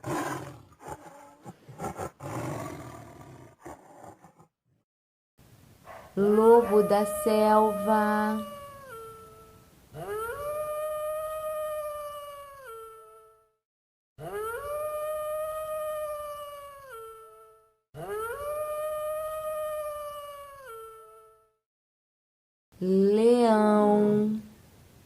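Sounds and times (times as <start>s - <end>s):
wolf howling: 6.2s - 13.4s, 14.2s - 21.4s.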